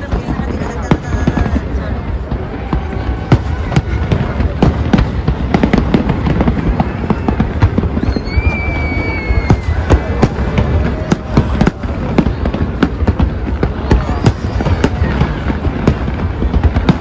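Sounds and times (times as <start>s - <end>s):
fireworks bangs and crackling: 0.0s - 17.0s
high firework whistle: 6.8s - 11.8s.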